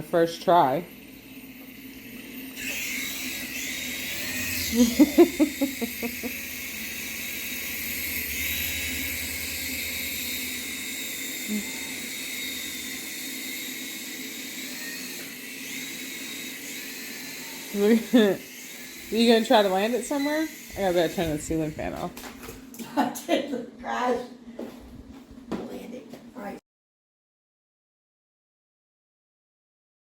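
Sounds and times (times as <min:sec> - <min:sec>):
toy helicopter rotor whining: 0:00.0 - 0:22.8.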